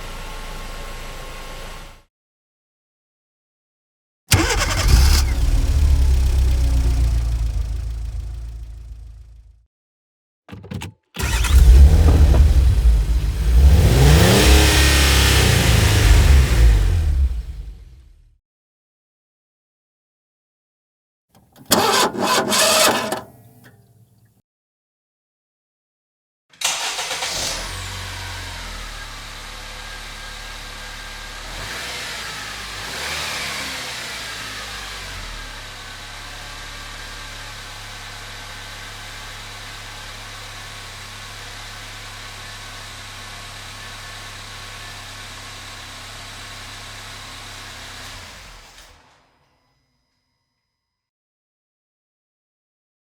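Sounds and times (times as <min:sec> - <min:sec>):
car engine starting: 0:00.0 - 0:02.0, 0:04.3 - 0:09.5, 0:11.2 - 0:18.1, 0:21.4 - 0:24.0, 0:26.6 - 0:48.8
car engine idling: 0:11.2 - 0:14.1
car engine revving: 0:11.2 - 0:18.0, 0:26.7 - 0:37.5.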